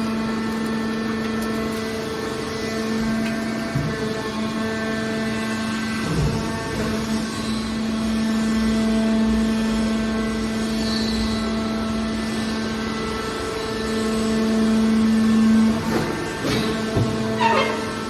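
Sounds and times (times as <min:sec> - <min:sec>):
baler machine hum: 0:13.9 - 0:18.0.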